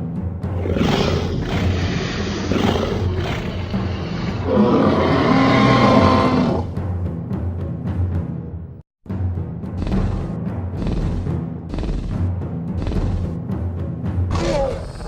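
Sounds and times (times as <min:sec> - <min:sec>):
dinosaur roars: 0:00.4 - 0:06.8, 0:14.3 - 0:15.0
background music with drum beat: 0:09.1 - 0:14.2.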